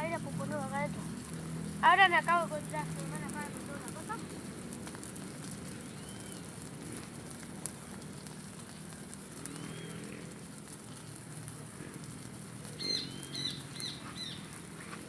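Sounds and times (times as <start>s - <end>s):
birds chirping: 0.0s - 4.4s, 5.7s - 7.0s, 9.4s - 10.3s, 12.6s - 15.0s
bonfire hissing and crackling: 0.0s - 15.0s.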